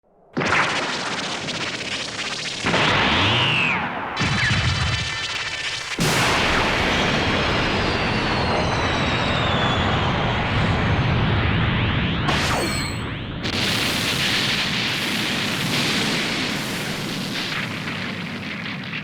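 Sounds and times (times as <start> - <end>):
cartoon explosion blasts: 0.3 - 19.0
whines sliding down in pitch: 12.2 - 13.2.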